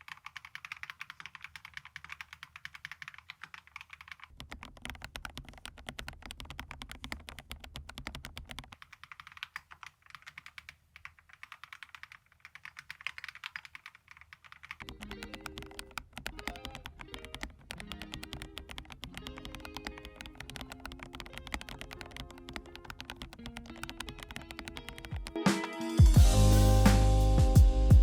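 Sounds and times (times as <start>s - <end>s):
typing on mechanical keyboard: 0.0s - 25.5s
music with held notes: 25.2s - 28.0s.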